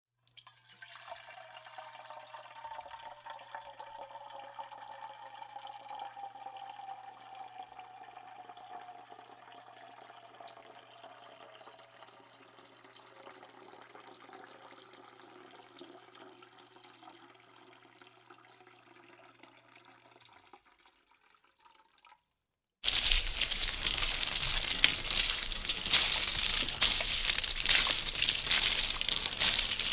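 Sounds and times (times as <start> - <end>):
tap water splashing into sink: 22.8 - 29.9.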